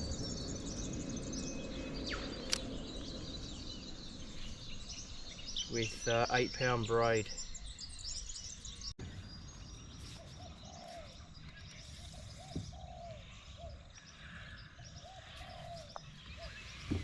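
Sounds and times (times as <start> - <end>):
high-pitched bird chirping: 0.0 - 8.9
bird calling low arched calls: 10.1 - 17.0.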